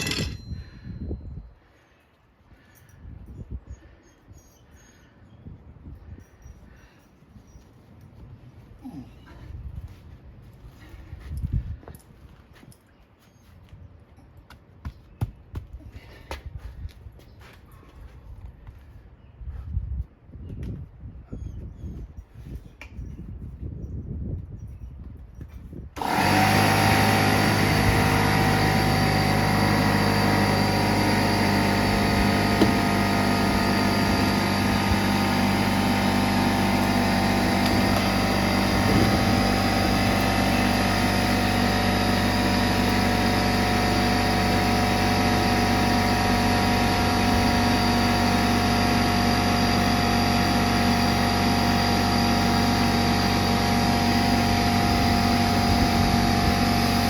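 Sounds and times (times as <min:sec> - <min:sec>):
motor-driven machine humming and whining: 0:26.0 - 0:57.0.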